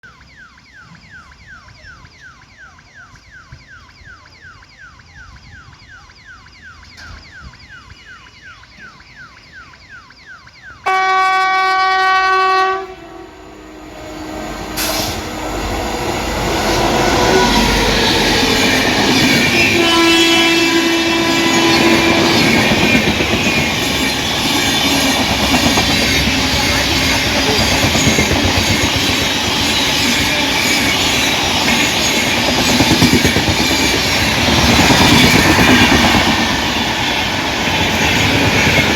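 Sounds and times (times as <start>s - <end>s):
falling chirp: 0.0s - 10.9s
train passing at speed: 10.8s - 38.9s
train horn blast: 10.9s - 22.7s.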